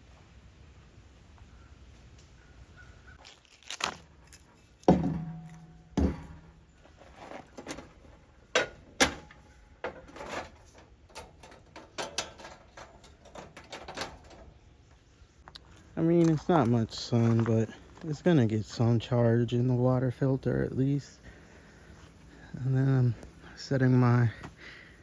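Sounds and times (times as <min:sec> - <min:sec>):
gear being handled and set down: 0:03.2 - 0:14.5.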